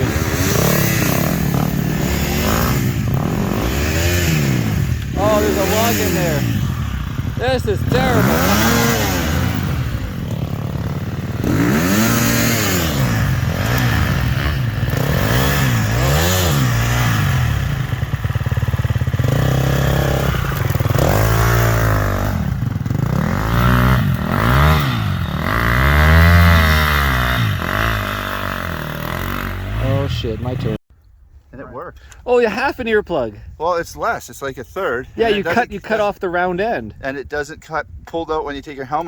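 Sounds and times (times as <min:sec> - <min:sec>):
dirt bike engine revving: 0:00.0 - 0:30.8.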